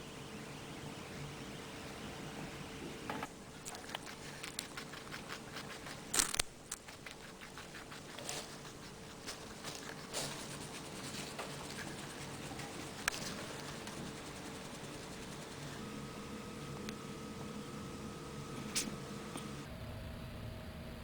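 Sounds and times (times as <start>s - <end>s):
guinea pig chewing carrot: 3.6s - 15.8s.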